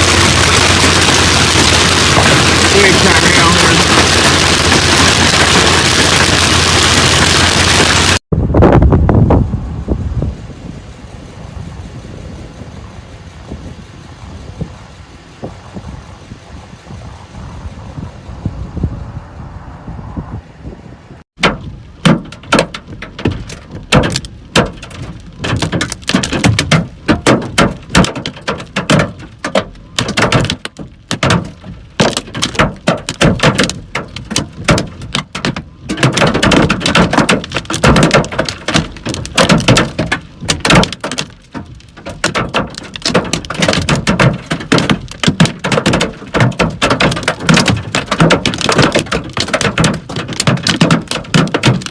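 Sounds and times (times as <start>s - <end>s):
hailstones clattering on hard surface: 0.0s - 8.2s, 21.4s - 51.9s.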